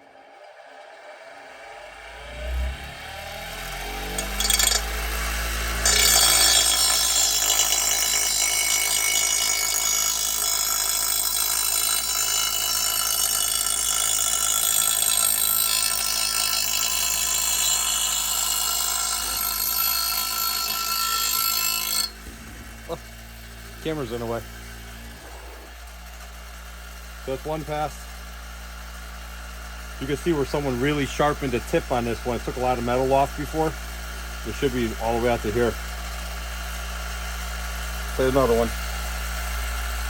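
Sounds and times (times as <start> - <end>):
electric grinder running: 0.0 - 40.0
grinder grinding steel blade: 2.1 - 40.0.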